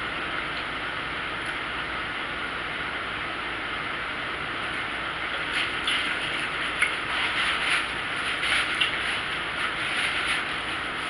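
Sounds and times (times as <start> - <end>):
utensil scraping food: 5.4 - 11.0.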